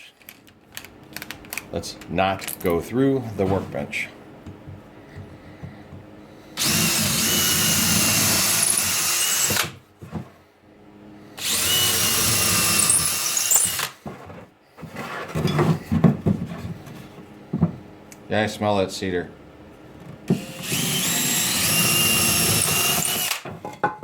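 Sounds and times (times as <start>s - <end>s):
power drill boring into wood: 6.6s - 9.8s, 11.4s - 14.0s, 20.3s - 23.4s
knocks and clatter: 15.2s - 17.8s.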